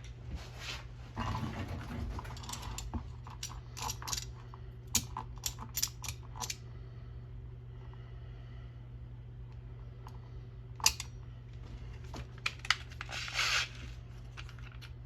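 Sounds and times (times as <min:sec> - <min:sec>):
low hum: 0:00.0 - 0:15.0
tools clicking and knocking: 0:02.3 - 0:06.6, 0:10.8 - 0:11.1.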